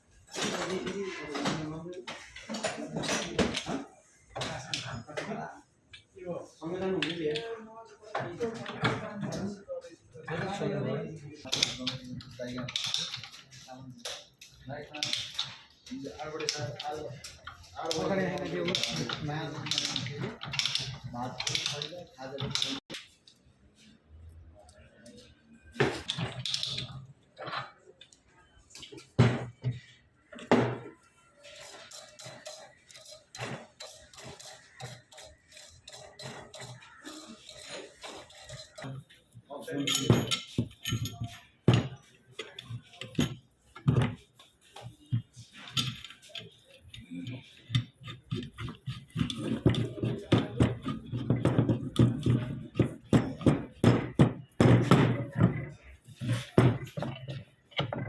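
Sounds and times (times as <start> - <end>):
tools knocking on pipe fittings: 31.6 - 58.0.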